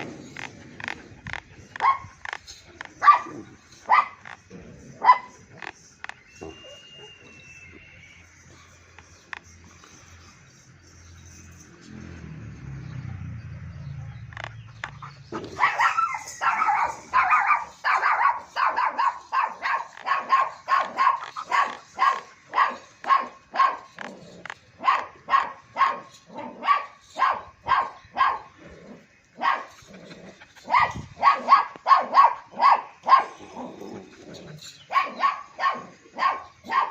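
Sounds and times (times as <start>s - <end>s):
dog barking: 1.8s - 2.2s, 3.0s - 4.4s, 5.0s - 5.4s, 15.4s - 24.1s, 24.8s - 28.6s, 29.4s - 29.8s, 30.6s - 33.7s, 34.9s - 36.9s.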